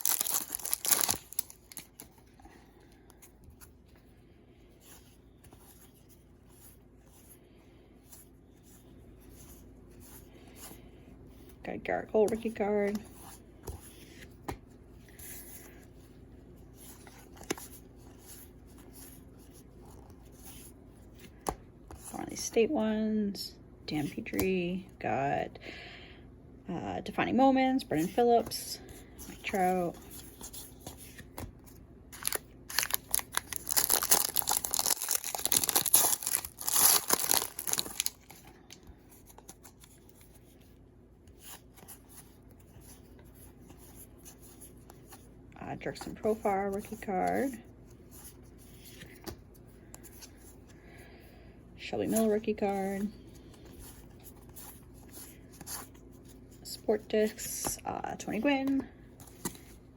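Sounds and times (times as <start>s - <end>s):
plastic foil pack tearing: 0.0s - 2.0s, 32.2s - 38.3s
cards rustling and tapping: 0.0s - 4.0s, 16.8s - 19.2s, 29.3s - 40.5s, 58.6s - 59.8s.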